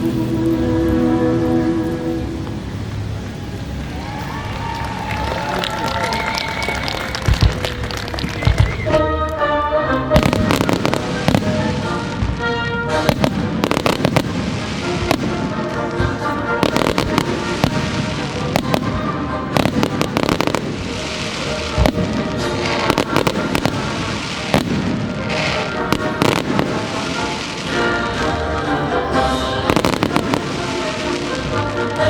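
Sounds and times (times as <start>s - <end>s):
fireworks cracking and banging: 2.4s - 9.4s, 10.0s - 32.0s
loud soundtrack music: 8.8s - 32.0s.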